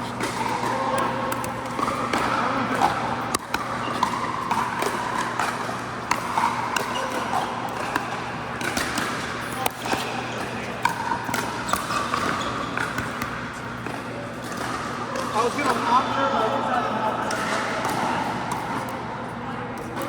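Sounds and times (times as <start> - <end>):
paddles hitting plastic ball: 0.2 - 14.7
ball bouncing: 0.2 - 15.8.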